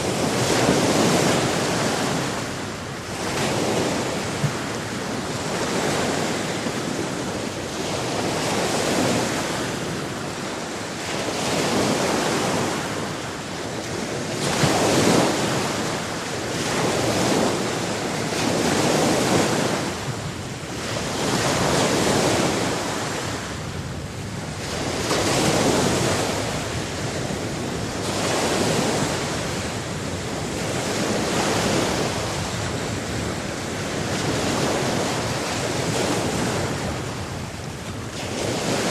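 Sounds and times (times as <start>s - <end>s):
sea waves breaking: 0.0s - 38.9s.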